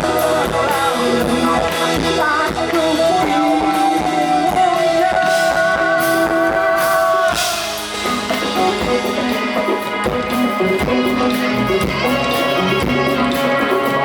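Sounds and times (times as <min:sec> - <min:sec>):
rock band playing live: 0:00.0 - 0:14.0
cymbal crash: 0:05.4 - 0:08.8.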